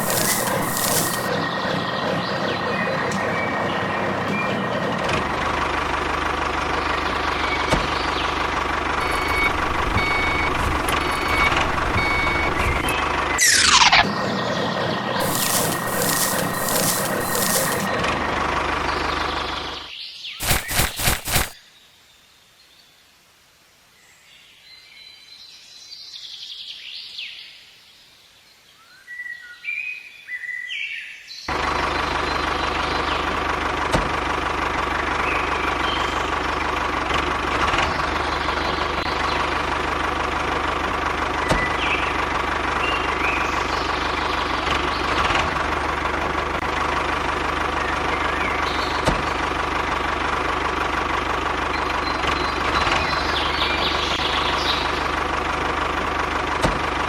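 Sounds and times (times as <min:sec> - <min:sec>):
small motor whining and humming: 0:00.0 - 0:01.3, 0:15.2 - 0:17.9.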